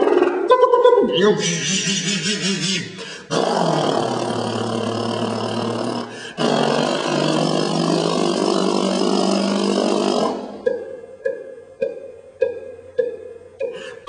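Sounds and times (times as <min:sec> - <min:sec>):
man imitating car engine: 0:00.4 - 0:10.6.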